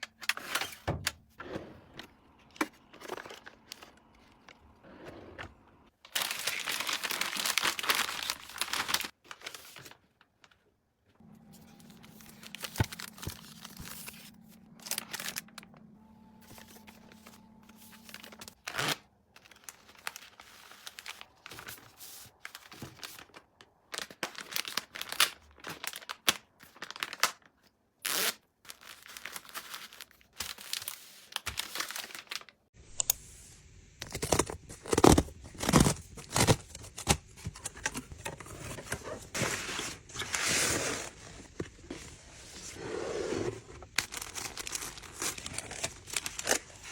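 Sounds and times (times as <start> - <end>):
packaging crinkling and tearing: 6.0 - 10.3, 11.3 - 32.6, 34.0 - 41.6, 43.8 - 46.9.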